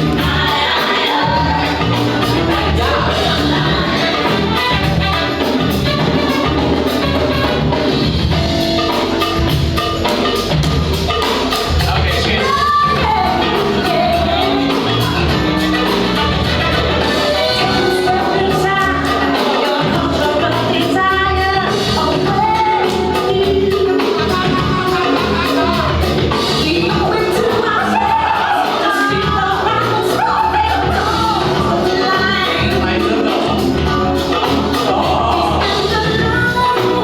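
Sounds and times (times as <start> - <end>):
drum beat: 0.0 - 37.0
funk music over sound system: 0.0 - 37.0
person singing: 17.6 - 37.0.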